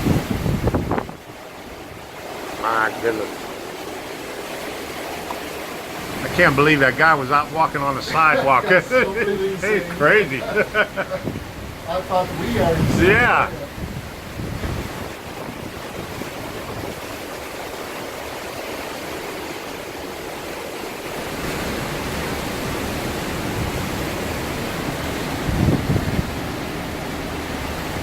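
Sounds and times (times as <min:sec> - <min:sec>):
strong wind rushing: 0:00.0 - 0:02.0, 0:09.4 - 0:17.1, 0:25.2 - 0:26.6.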